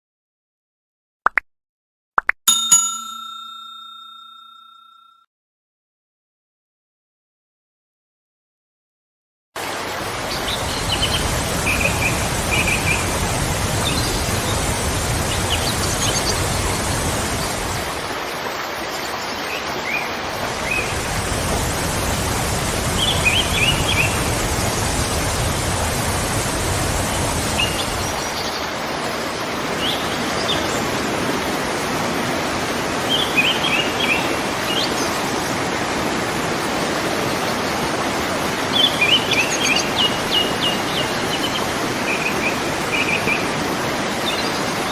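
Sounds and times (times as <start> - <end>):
waterfall rushing: 9.6 - 44.9.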